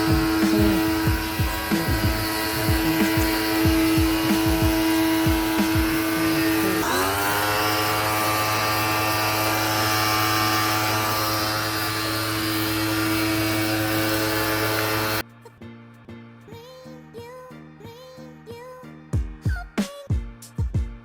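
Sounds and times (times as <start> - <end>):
quiet music: 0.0 - 8.6, 11.4 - 21.0
pressure washer motor whine: 0.0 - 15.2.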